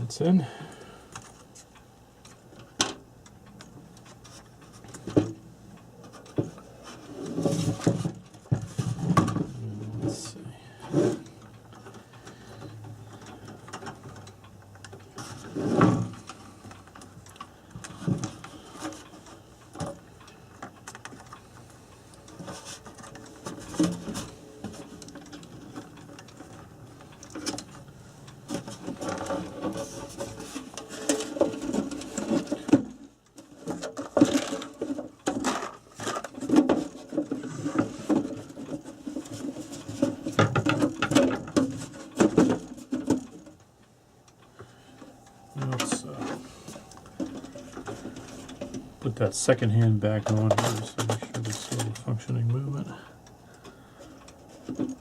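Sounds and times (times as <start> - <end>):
clock parts clicking and rattling: 11.1 - 48.8.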